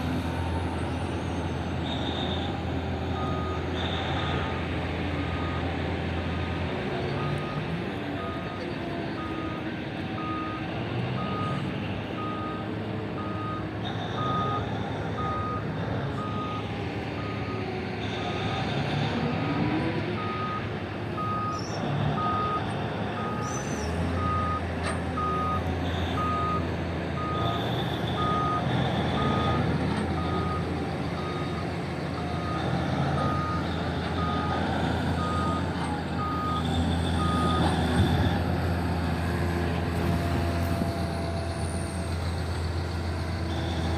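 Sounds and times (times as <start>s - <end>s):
reversing alarm beeping: 13.2s - 17.6s, 20.2s - 21.6s, 22.2s - 22.6s, 23.2s - 24.6s, 25.2s - 38.4s.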